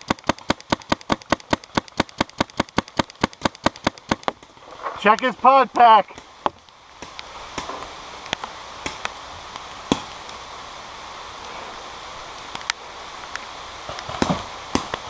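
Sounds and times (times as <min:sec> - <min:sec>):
paintball markers firing: 0:00.0 - 0:04.4
heavy rain: 0:00.0 - 0:15.0.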